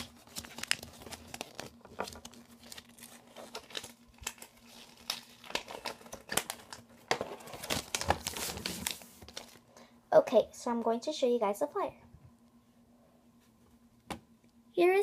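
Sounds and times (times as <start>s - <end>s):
paper crinkling and rustling: 0.0s - 9.6s.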